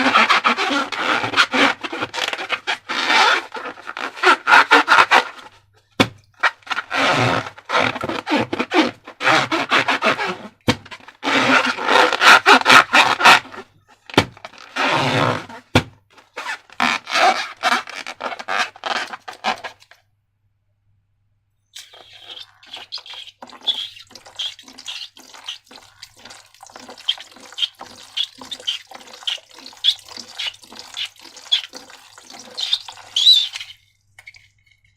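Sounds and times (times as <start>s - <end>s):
slime squelching by hand: 21.8s - 33.8s.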